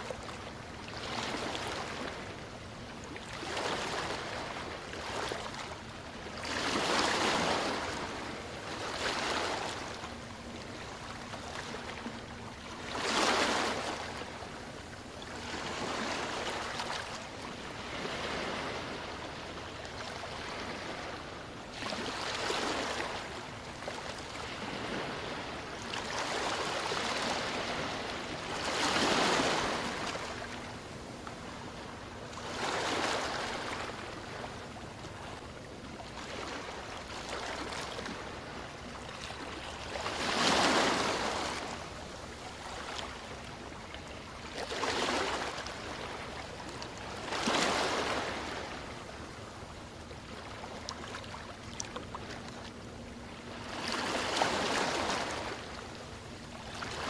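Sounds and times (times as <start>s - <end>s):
ocean waves washing ashore: 0.0s - 35.4s, 36.1s - 43.9s.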